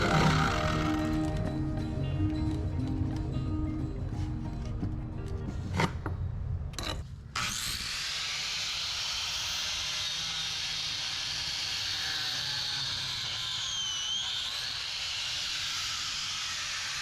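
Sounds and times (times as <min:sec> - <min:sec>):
music: 0:00.0 - 0:06.4.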